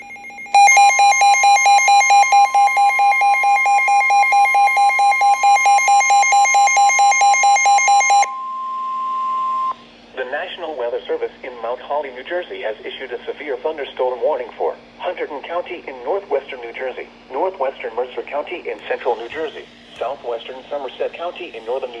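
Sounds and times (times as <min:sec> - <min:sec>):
harsh pulsing alert beep: 0:00.0 - 0:09.8
steady high alert tone: 0:00.0 - 0:09.8.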